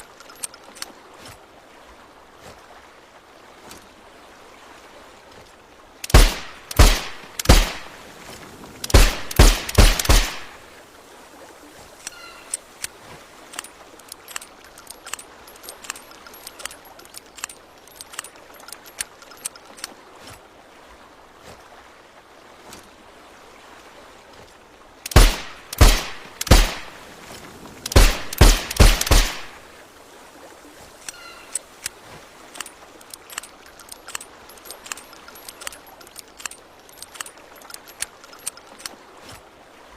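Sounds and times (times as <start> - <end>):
faint small clicks: 0.0 - 1.0, 12.0 - 20.0, 31.0 - 39.4
suppressed revolver shots: 8.8 - 10.6, 25.1 - 26.9, 27.9 - 29.6.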